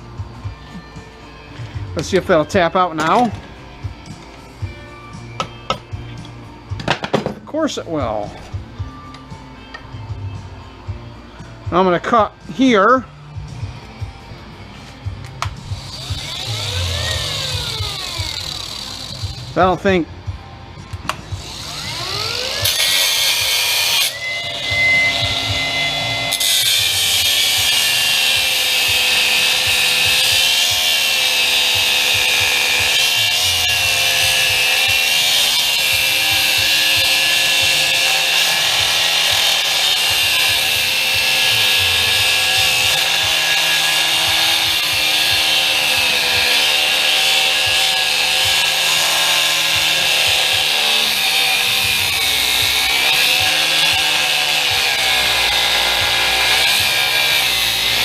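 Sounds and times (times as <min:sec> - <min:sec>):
cutoff wheel cutting metal: 0:15.4 - 0:19.7, 0:21.2 - 0:58.0.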